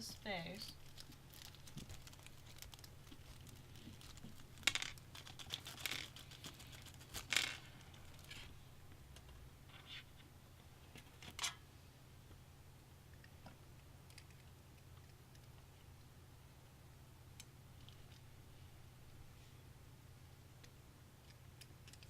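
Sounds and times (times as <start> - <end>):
low steady hum: 0.0 - 22.0
packaging rustling and crinkling: 0.7 - 8.5.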